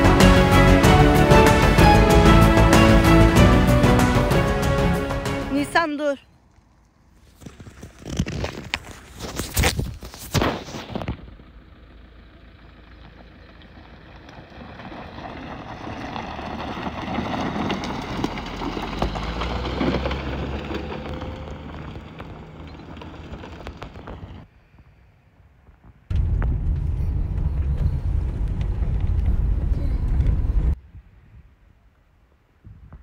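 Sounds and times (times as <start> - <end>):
vehicle passing: 12.2 - 24.4.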